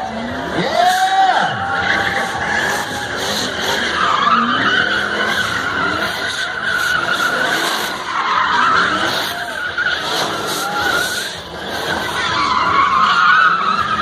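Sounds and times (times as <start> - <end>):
car engine running hard: 0.0 - 14.0
tyres squealing: 0.5 - 14.0.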